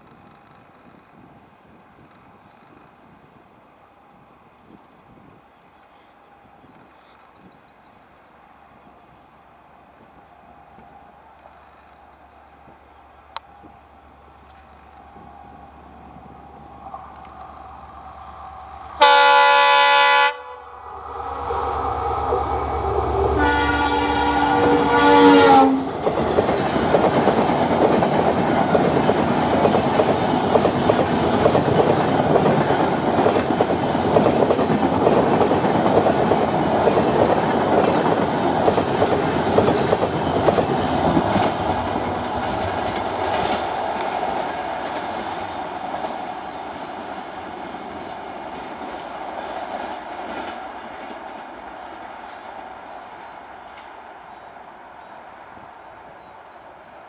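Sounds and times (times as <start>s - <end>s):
train rolling past: 1.4s - 57.0s
locomotive air horn: 19.0s - 25.9s.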